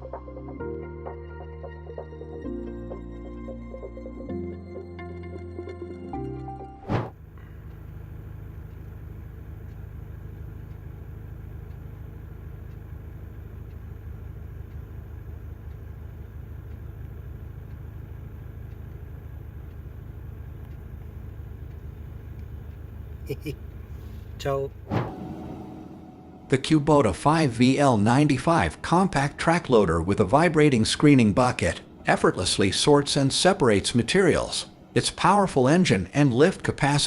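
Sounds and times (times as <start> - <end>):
machine engine rumbling: 7.0 - 37.0
sharp loud click: 24.9 - 26.4.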